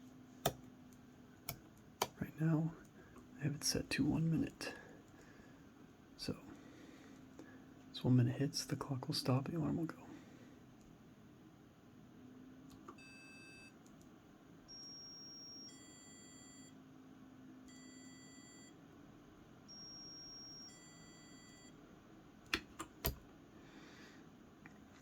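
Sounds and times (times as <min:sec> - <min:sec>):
sharp clicks: 0:01.5 - 0:02.2
alarm clock buzzer beeping: 0:14.7 - 0:16.7.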